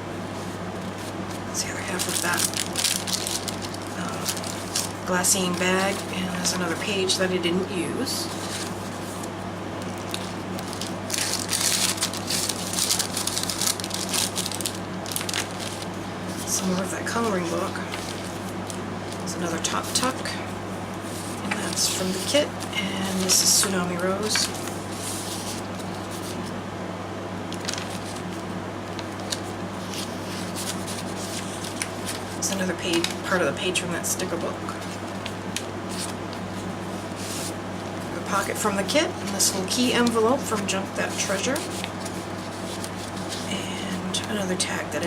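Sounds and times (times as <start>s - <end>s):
steady low hum: 0.0s - 45.0s
paper pages rustling: 0.4s - 7.1s, 8.2s - 20.2s, 23.2s - 26.5s, 27.5s - 33.3s, 34.3s - 38.1s, 39.2s - 43.5s.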